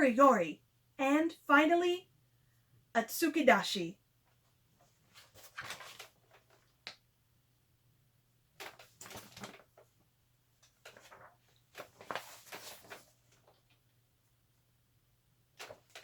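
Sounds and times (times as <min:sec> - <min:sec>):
paper pages rustling: 0:04.8 - 0:07.0, 0:08.6 - 0:10.0, 0:10.6 - 0:13.9, 0:15.6 - 0:16.0.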